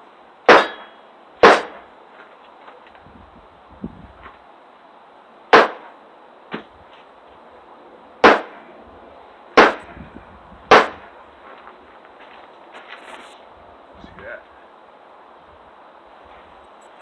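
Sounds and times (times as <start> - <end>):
hammer striking metal hatchet: 0.5 - 1.8, 5.5 - 5.9, 8.2 - 8.6, 9.6 - 9.9, 10.7 - 11.0.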